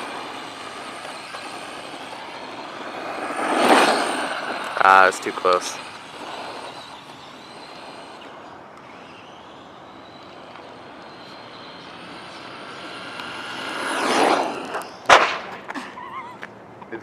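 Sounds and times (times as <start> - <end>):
toy truck motor whining: 0.0 - 15.1.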